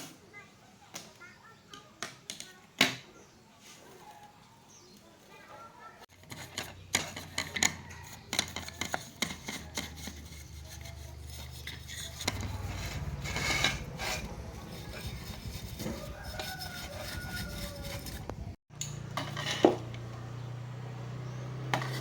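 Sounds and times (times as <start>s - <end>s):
hand tools clicking and scraping: 6.1s - 20.1s, 21.5s - 22.0s.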